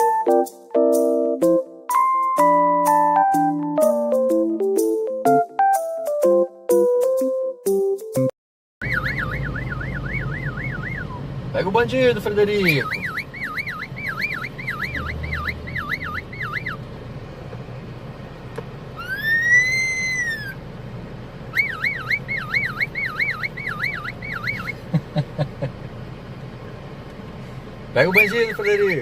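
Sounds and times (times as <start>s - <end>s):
cockatiel whistling siren imitation: 8.8s - 11.2s, 12.6s - 16.8s, 19.0s - 20.6s, 21.5s - 24.9s, 28.0s - 29.0s.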